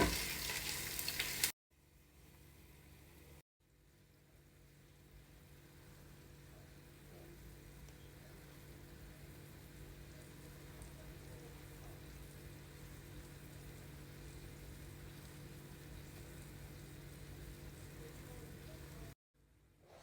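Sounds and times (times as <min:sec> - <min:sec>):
food sizzling in a pot: 0:00.0 - 0:01.6.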